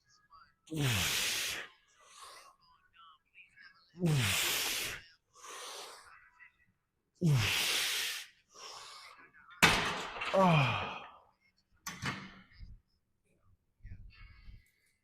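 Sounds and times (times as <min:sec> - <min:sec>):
man grunting: 0:00.7 - 0:01.5, 0:04.0 - 0:04.9, 0:07.2 - 0:07.8, 0:10.3 - 0:11.2.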